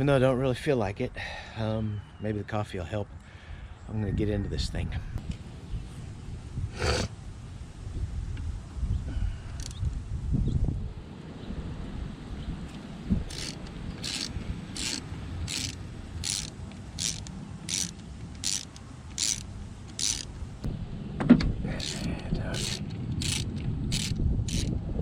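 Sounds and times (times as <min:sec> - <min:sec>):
ratchet wrench clicking: 0:13.3 - 0:20.3, 0:21.8 - 0:24.7.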